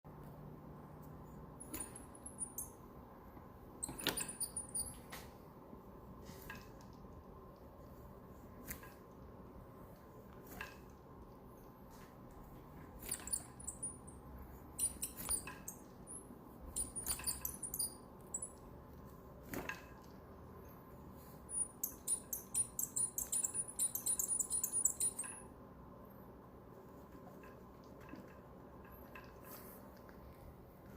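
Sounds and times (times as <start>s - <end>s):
faint steady hum: 0.1s - 30.9s
bearing squeaking and clicking: 3.8s - 5.1s, 12.7s - 18.6s, 21.5s - 25.5s.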